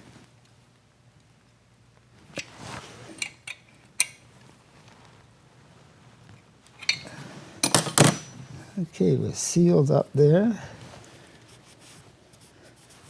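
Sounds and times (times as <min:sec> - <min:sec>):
metal tools clinking: 0:03.1 - 0:04.2, 0:06.8 - 0:08.5.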